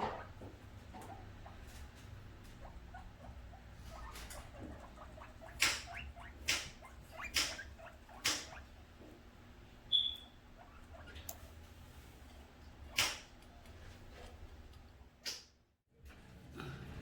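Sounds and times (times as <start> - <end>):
guinea pigs squealing: 0.0 - 8.9, 9.9 - 11.6, 12.8 - 13.8.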